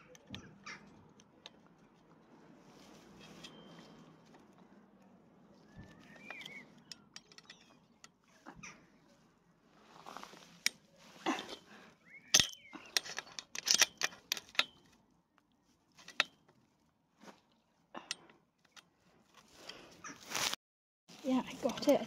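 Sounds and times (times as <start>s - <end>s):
metal clicks and clanks: 6.0s - 8.2s, 12.3s - 15.0s, 16.0s - 16.4s.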